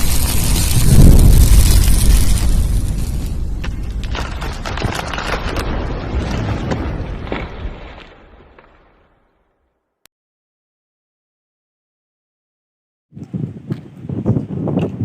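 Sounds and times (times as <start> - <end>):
dense rumble with sharp impacts: 0.0 - 8.5.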